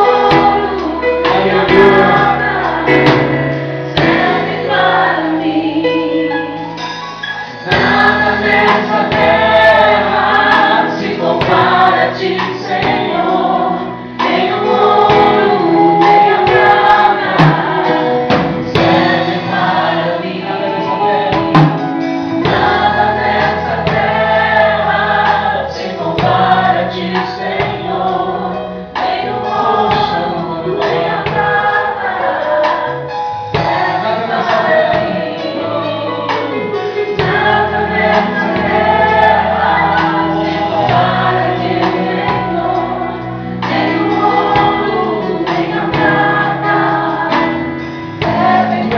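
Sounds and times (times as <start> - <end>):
choir singing gospel song: 0.0 - 48.9
drum beat: 1.3 - 4.9, 7.7 - 13.5, 14.2 - 20.0.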